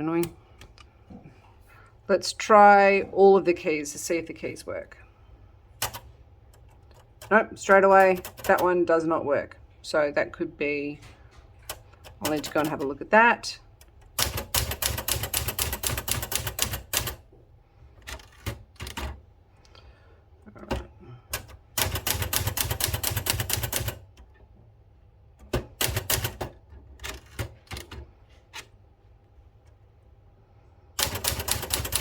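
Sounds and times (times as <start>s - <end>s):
manual typewriter typing: 5.8s - 8.8s, 11.0s - 13.1s, 13.8s - 17.2s, 18.0s - 19.2s, 20.7s - 24.3s, 25.4s - 28.7s, 31.0s - 32.0s.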